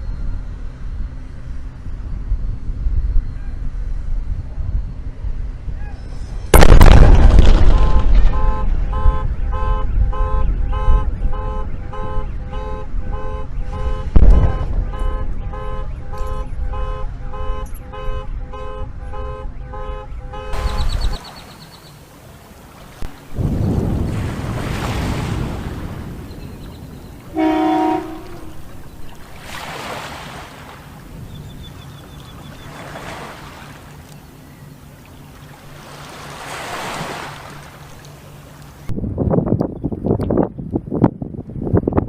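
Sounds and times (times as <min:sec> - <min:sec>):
long rumble with booms: 0:06.5 - 0:11.3, 0:14.0 - 0:16.7, 0:23.0 - 0:27.2
rocket explosion blast: 0:06.6 - 0:08.5, 0:14.1 - 0:15.0.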